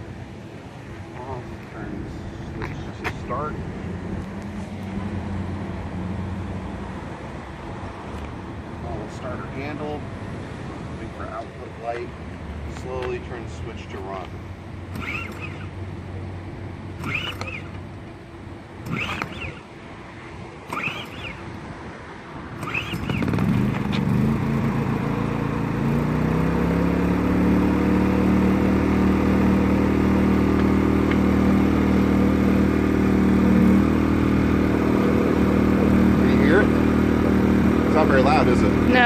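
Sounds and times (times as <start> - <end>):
generator engine running: 14.2 - 21.7, 22.5 - 39.0
starter cord pulled: 14.9 - 15.8, 17.0 - 17.8, 18.8 - 19.7, 20.7 - 21.5, 22.6 - 25.0.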